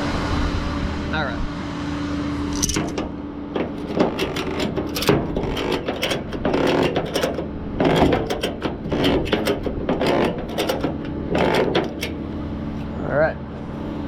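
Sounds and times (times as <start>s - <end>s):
low engine hum: 0.0s - 14.0s
ratchet clicking: 2.6s - 12.3s.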